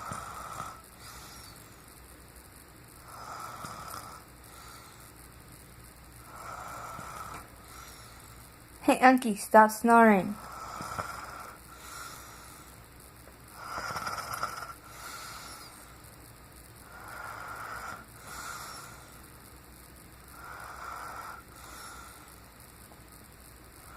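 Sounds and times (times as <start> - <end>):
man snoring: 0.0 - 1.6, 3.0 - 4.8, 6.3 - 8.0, 10.4 - 12.4, 13.6 - 15.8, 16.8 - 19.0, 20.3 - 22.2.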